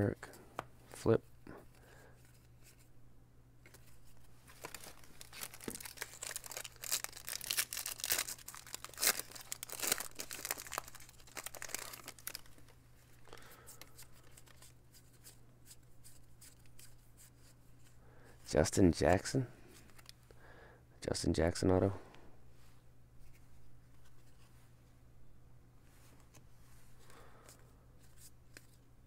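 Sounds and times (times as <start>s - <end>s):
card wrapper tearing and crinkling: 4.5s - 12.8s.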